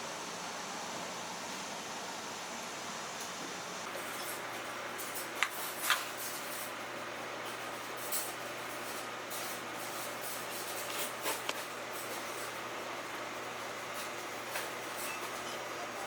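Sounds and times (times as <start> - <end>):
steady background hiss: 0.0 - 16.0
utensils clinking and scraping: 3.9 - 6.8, 7.4 - 12.6, 14.0 - 15.8.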